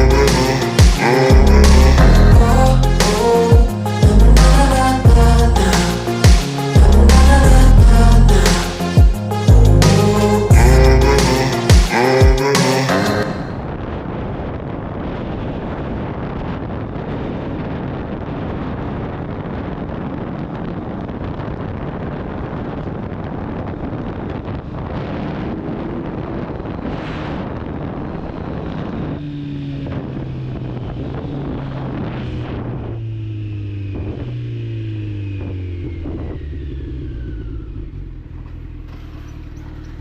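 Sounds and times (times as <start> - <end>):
motorcycle engine steady note: 0.0 - 12.5, 27.7 - 40.0
wind rushing over microphone: 0.0 - 40.0.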